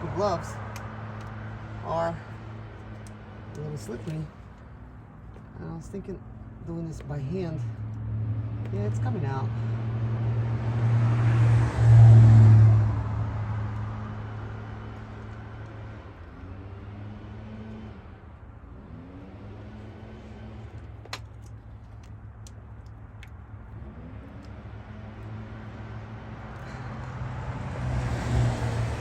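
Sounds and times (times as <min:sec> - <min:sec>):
vehicle passing close: 0:06.4 - 0:29.0.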